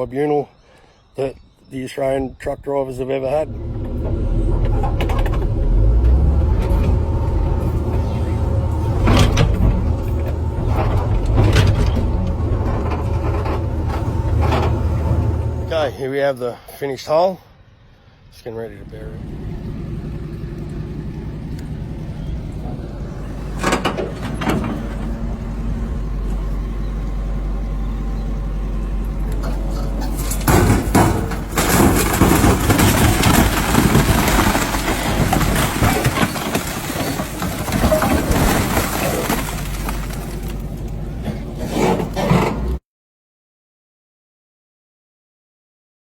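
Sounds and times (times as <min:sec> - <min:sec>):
excavator diesel engine running: 0:03.4 - 0:16.0, 0:18.8 - 0:42.8
bucket rattling and scraping soil: 0:29.4 - 0:42.7.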